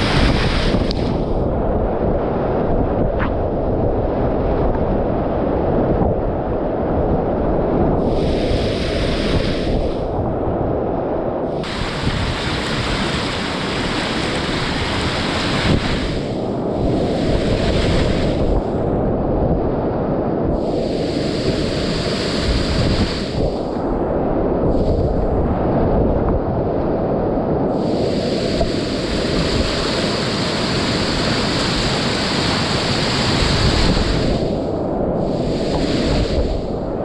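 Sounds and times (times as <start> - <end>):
water splashing hiss: 0.0 - 1.3, 8.0 - 10.1, 11.5 - 18.8, 20.6 - 23.8, 27.7 - 36.8
wind rumble on microphone: 0.0 - 37.0
whitewater rushing: 11.6 - 18.7, 20.7 - 23.7, 27.8 - 36.7.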